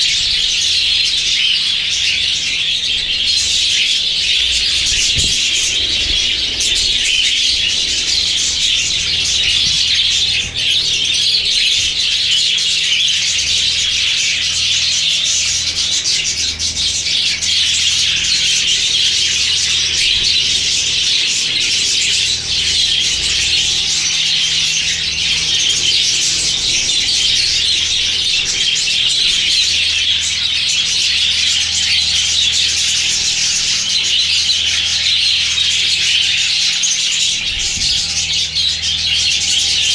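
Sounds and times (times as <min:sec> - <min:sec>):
flock of budgerigars chattering: 0:00.0 - 0:39.9.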